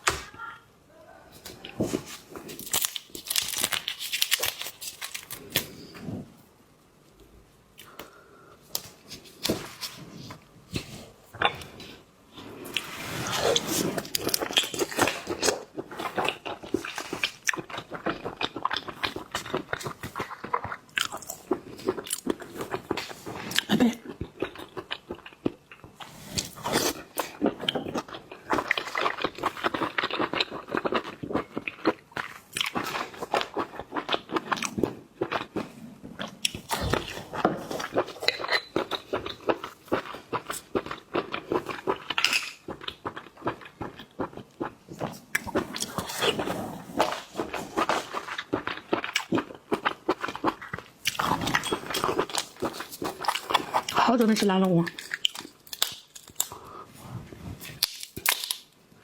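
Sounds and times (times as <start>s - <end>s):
chewing with crunches: 12.7s - 56.8s.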